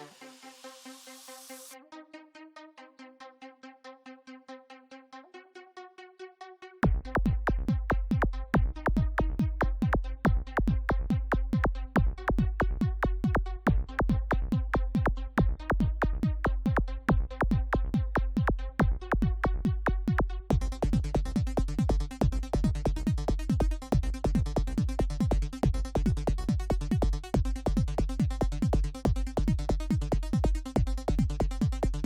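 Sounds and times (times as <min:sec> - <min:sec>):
electronic dance music: 0:00.0 - 0:02.1.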